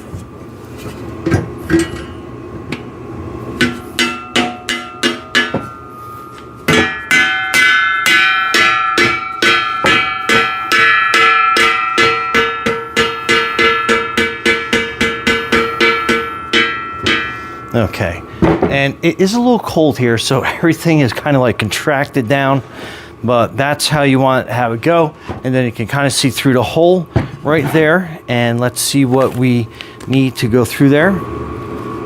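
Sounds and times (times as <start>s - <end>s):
rubber mallet hammering steel tube: 3.6s - 5.9s, 6.7s - 17.8s.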